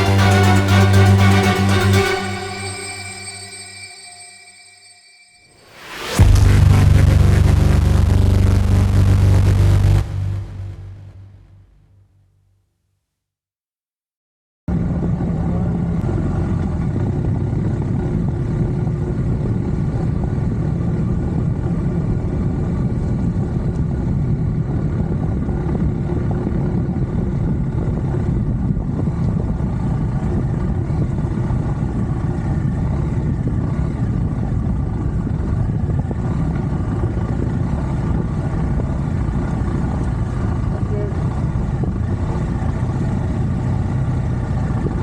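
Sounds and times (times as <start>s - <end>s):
motorcycle engine running: 30.1s - 45.0s.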